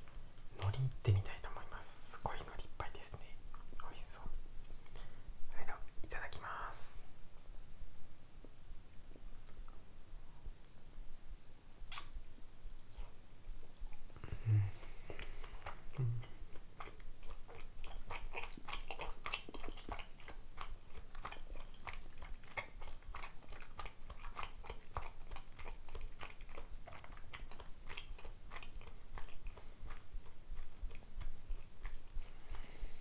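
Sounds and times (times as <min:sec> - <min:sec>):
mouth chewing clicks and smacks: 0:11.9 - 0:32.7.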